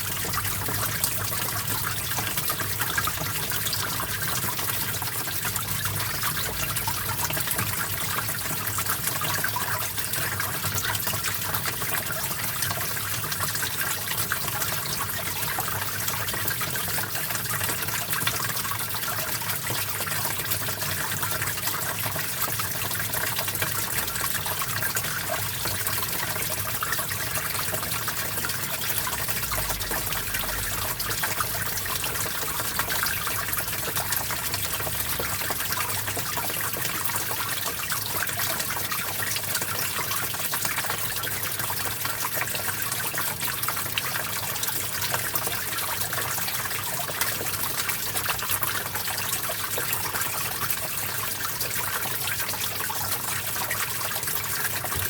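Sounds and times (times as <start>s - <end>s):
stream water flowing: 12.5s - 55.0s.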